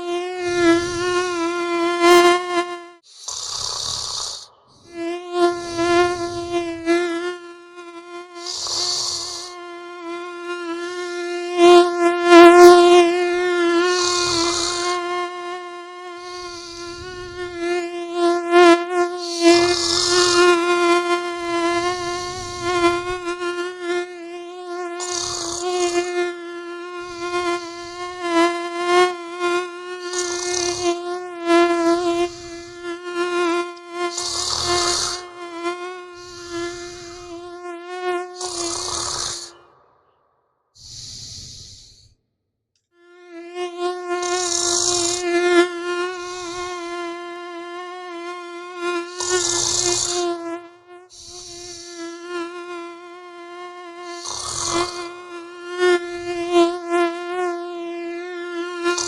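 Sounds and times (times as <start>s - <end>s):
mosquito whine: 0.0s - 40.2s, 40.8s - 42.2s, 43.0s - 59.0s
snoring breaths: 3.0s - 4.9s, 5.5s - 6.5s, 8.4s - 9.6s, 13.8s - 15.0s, 16.2s - 17.6s, 19.2s - 20.4s, 21.7s - 23.2s, 25.0s - 26.1s, 30.1s - 30.9s, 32.0s - 32.8s, 34.1s - 35.3s, 36.2s - 37.4s, 38.3s - 39.6s, 40.8s - 42.2s, 44.2s - 45.2s, 49.2s - 50.2s, 51.1s - 52.0s, 54.1s - 55.1s.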